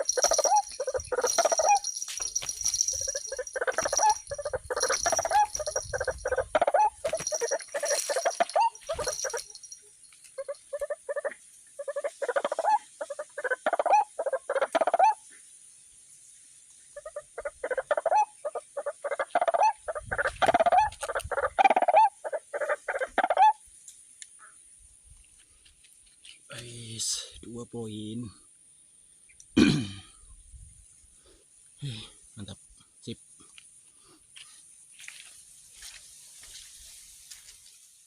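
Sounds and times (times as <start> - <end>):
waterhen croaking calls: 0.0 - 2.0, 2.7 - 9.7, 10.4 - 15.2, 16.9 - 23.6
high insect trill: 0.0 - 38.0.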